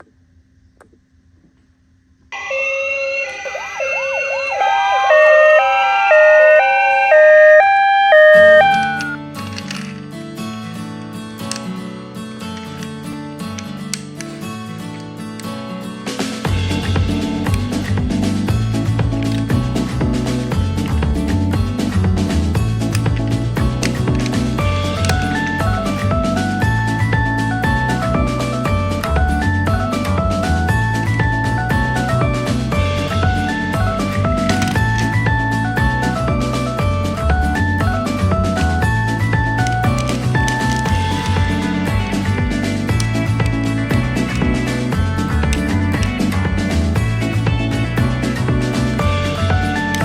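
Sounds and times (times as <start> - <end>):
toy ambulance sirens: 2.4 - 9.2
upbeat background music: 16.1 - 50.0.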